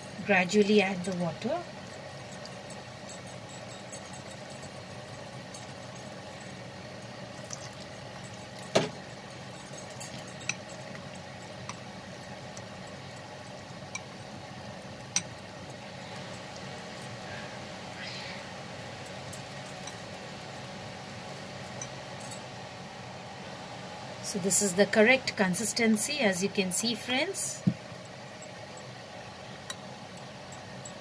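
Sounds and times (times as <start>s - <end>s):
steady background hum: 0.0s - 31.0s
utensil clinking against bowl: 7.4s - 11.8s.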